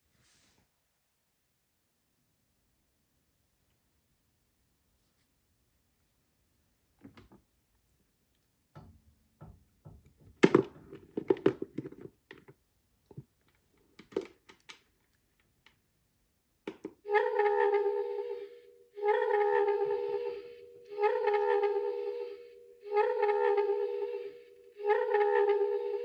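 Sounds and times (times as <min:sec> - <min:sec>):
buzzy electronic warble tone: 0:17.1 - 0:26.0.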